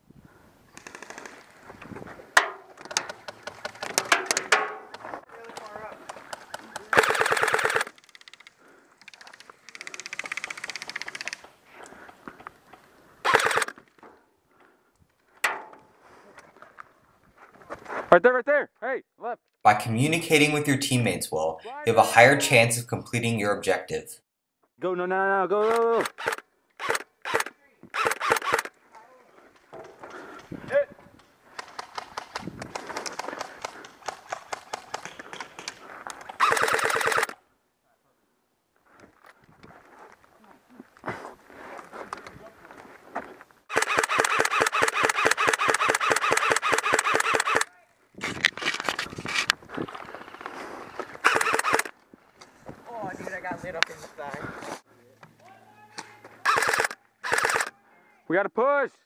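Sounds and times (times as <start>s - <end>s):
airsoft rifles firing: 6.4s - 8.0s, 13.2s - 13.8s, 25.7s - 28.7s, 36.3s - 37.4s, 43.7s - 47.7s, 51.2s - 51.9s, 56.4s - 57.7s.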